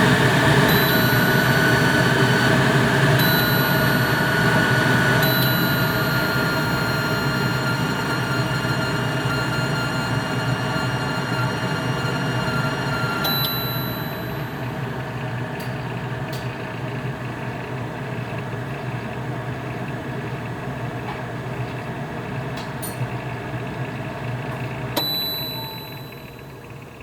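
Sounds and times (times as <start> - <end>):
exhaust fan humming: 0.0 - 27.0
short high beep: 0.7 - 1.5, 5.2 - 14.5, 25.0 - 26.4.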